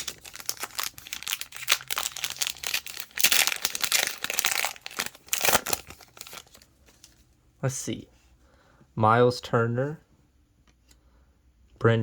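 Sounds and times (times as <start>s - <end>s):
plastic wrapper crinkling and tearing: 0.0s - 7.2s.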